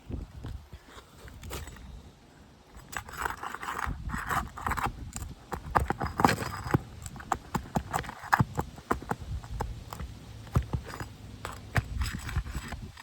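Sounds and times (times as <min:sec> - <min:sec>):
pry tool scraping shingle: 0:02.7 - 0:13.0.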